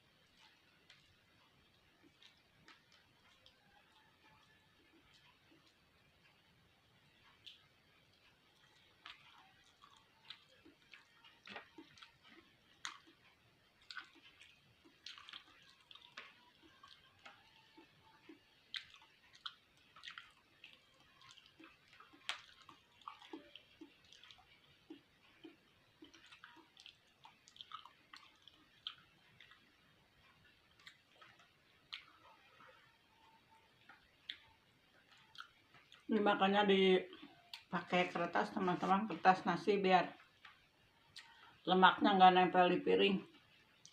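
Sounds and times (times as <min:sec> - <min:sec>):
person chewing wet mouth clicks: 0:08.6 - 0:29.7, 0:30.7 - 0:32.2, 0:33.9 - 0:34.5, 0:35.1 - 0:36.1.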